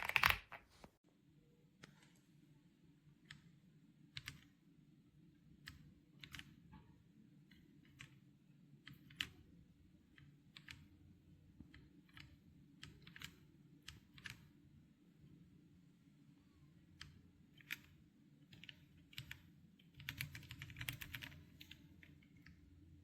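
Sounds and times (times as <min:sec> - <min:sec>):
mechanical keyboard keystrokes: 0:00.0 - 0:00.6, 0:18.5 - 0:22.6.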